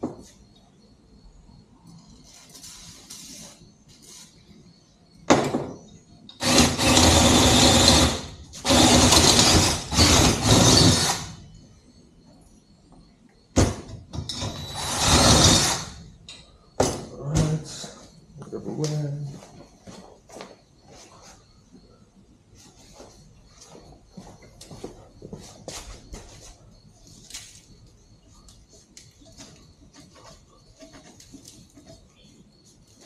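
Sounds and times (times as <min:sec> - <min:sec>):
power drill boring metal: 0:06.4 - 0:11.4, 0:14.3 - 0:16.0.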